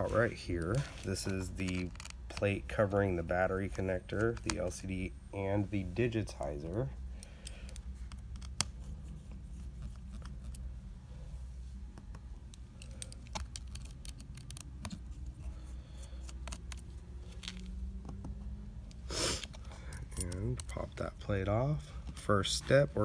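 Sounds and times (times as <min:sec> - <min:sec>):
steady low hum: 0:00.0 - 0:23.0
screwdriver clicking on tiny screws: 0:12.8 - 0:15.0.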